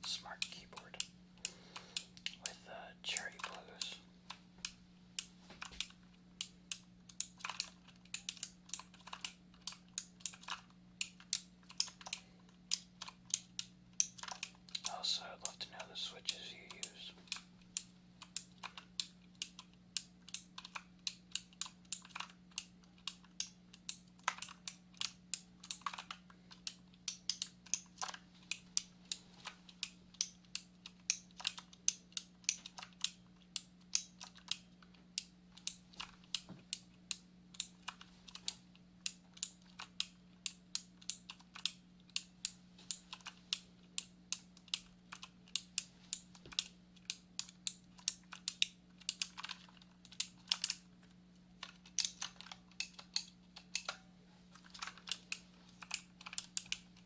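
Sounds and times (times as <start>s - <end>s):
faint steady hum: 0.0s - 57.0s
keyboard typing clicks: 4.6s - 42.3s.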